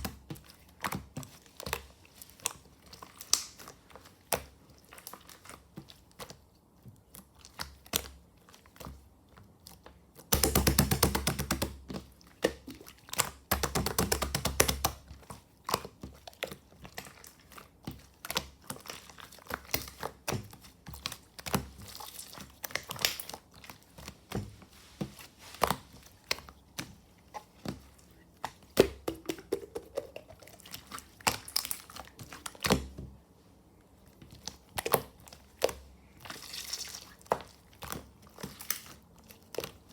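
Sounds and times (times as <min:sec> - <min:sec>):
slime rapid crackling: 0:10.3 - 0:11.9, 0:12.6 - 0:15.0.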